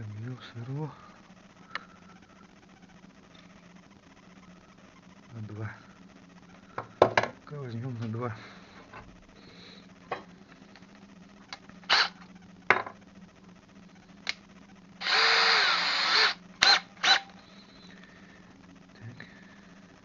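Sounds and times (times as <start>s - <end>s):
small electric drill running: 11.8s - 12.3s, 15.0s - 17.4s.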